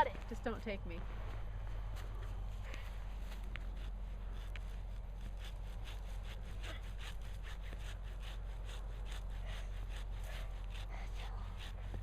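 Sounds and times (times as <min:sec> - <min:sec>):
hand saw cutting tree trunk: 0:03.2 - 0:12.0.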